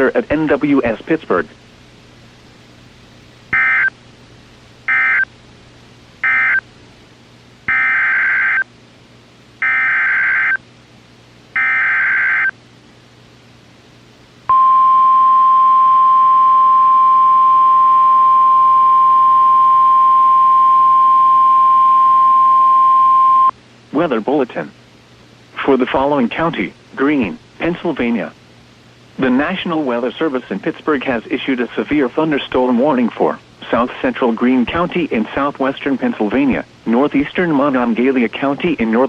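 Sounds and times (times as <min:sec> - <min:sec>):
steady warning alarm tone: 0:03.6 - 0:03.9, 0:04.9 - 0:05.3, 0:06.2 - 0:06.6, 0:07.7 - 0:08.7, 0:09.6 - 0:10.6, 0:11.6 - 0:12.6, 0:14.5 - 0:23.5.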